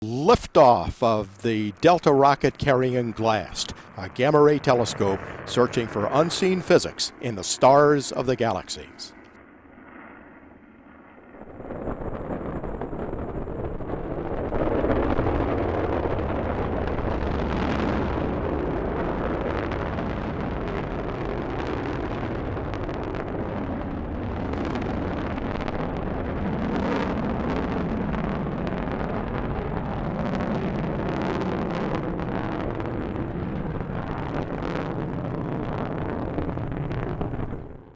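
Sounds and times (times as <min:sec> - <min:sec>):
rocket launch roar: 0:00.0 - 0:09.2, 0:11.2 - 0:37.9
sharp crackles: 0:11.4 - 0:37.9.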